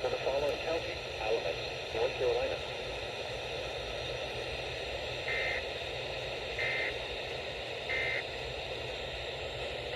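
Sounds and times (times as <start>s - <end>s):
radio static hiss: 0.0s - 3.0s, 5.0s - 8.4s.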